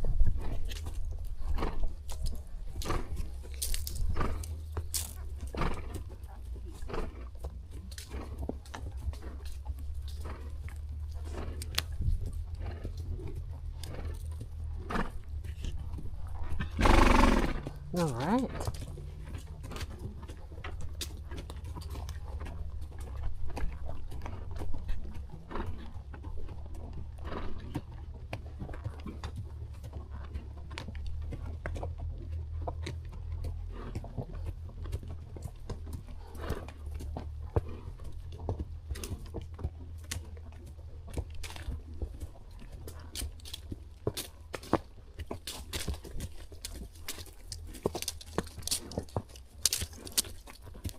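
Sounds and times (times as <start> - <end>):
hoof falls on a trail: 0.0 - 50.9
low rumble on microphone: 8.4 - 16.8.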